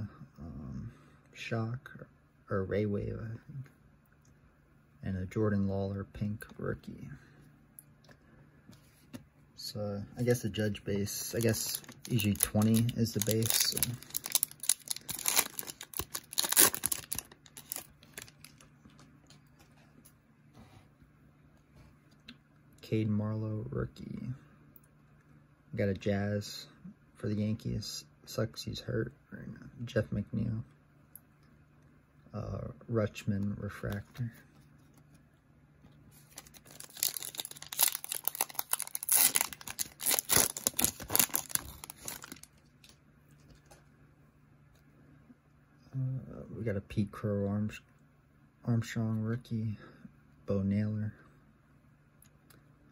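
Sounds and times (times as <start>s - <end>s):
foil wrapper crinkling and tearing: 11.0s - 18.7s, 36.2s - 43.0s.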